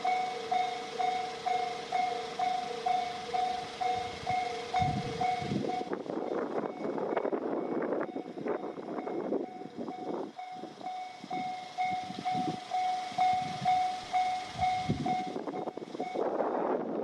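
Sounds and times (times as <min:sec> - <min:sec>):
level crossing bell ringing: 0:00.0 - 0:06.0
train passing: 0:00.0 - 0:17.0.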